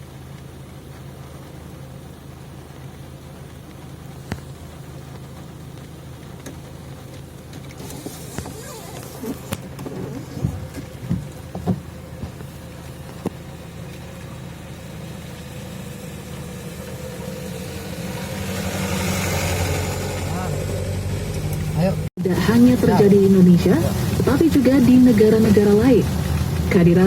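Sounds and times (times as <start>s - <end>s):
vehicle engine running: 0.0s - 27.0s
knocks and clunks: 7.2s - 13.4s.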